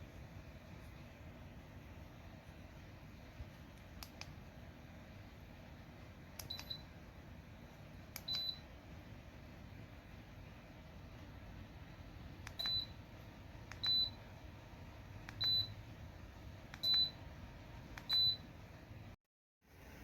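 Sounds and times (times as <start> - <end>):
faint low hum: 0.0 - 20.0
heater control beeping: 6.4 - 7.0, 8.1 - 8.8, 12.4 - 14.4, 15.2 - 15.9, 16.7 - 18.5.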